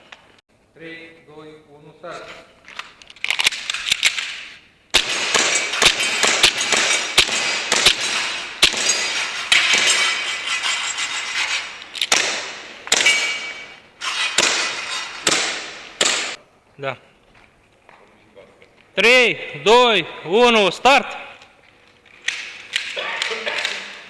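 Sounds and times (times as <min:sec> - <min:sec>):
airsoft pistol shots: 0:04.9 - 0:10.0, 0:12.0 - 0:13.6, 0:14.2 - 0:16.4.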